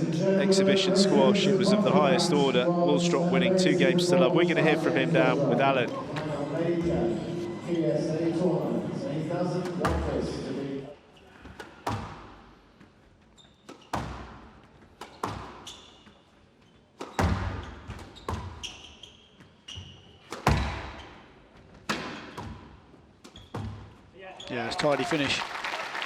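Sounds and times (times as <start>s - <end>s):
squash ball hits: 11.5s - 12.5s, 13.7s - 15.7s, 17.0s - 18.7s, 20.2s - 21.0s, 21.8s - 23.9s
shoe squeaks: 13.0s - 14.2s, 14.8s - 24.8s.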